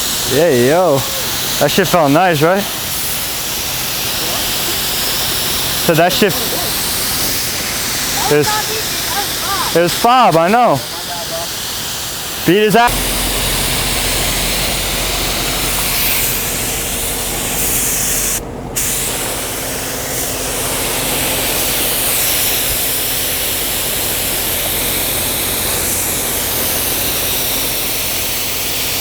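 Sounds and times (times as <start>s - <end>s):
spray gun hissing: 0.0s - 29.0s
low steady hum: 12.9s - 28.4s.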